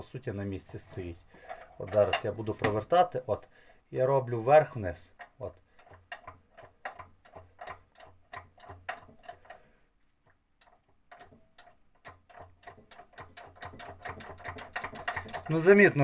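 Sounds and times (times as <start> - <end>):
wrench metallic clicks: 0.8 - 2.9, 10.6 - 16.0.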